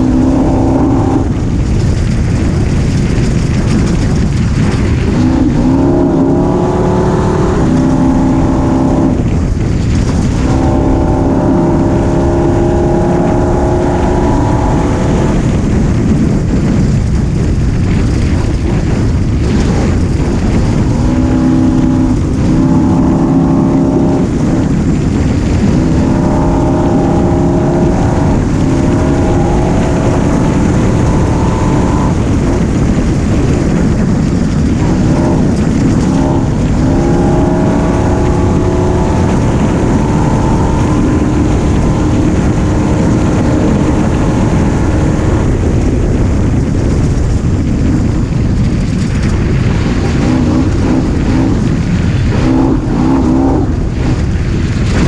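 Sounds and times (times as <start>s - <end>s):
road noise: 0.0s - 55.0s
wind rushing: 0.0s - 55.0s
small vehicle engine revving: 4.7s - 15.8s, 19.4s - 46.6s.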